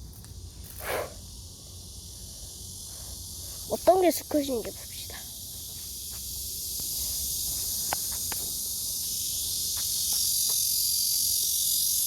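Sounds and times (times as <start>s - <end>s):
cicadas buzzing: 0.0s - 12.0s.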